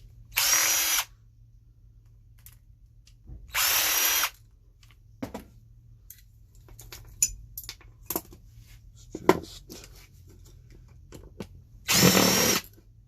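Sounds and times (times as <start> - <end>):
power drill running: 0.3 - 1.1, 3.5 - 4.4, 11.8 - 12.6.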